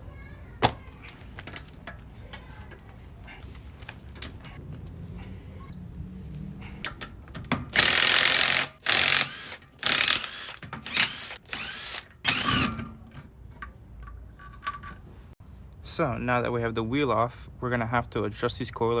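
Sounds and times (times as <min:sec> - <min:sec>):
wrench ratcheting: 0:07.8 - 0:12.8.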